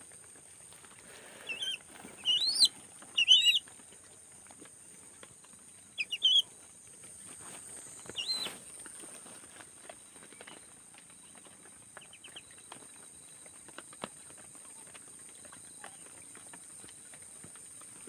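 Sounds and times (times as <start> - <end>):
ducks whistled calls: 1.4 - 3.6, 6.0 - 6.5, 8.2 - 8.6
rustles and clicks: 6.7 - 18.0.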